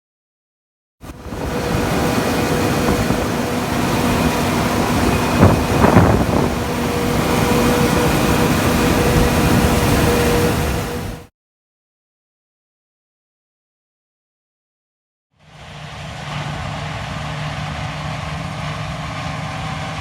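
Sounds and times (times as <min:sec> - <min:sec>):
farm machinery engine rumble: 0:01.0 - 0:11.2, 0:15.4 - 0:20.0.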